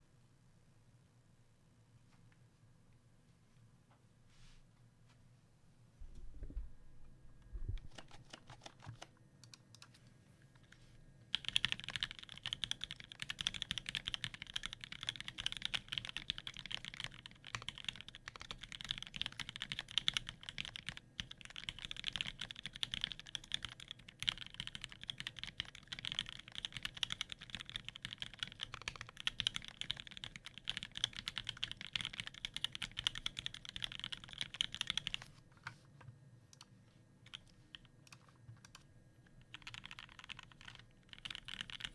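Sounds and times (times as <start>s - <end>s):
mechanical keyboard typing: 7.8s - 10.0s, 11.3s - 35.3s, 37.3s - 41.9s.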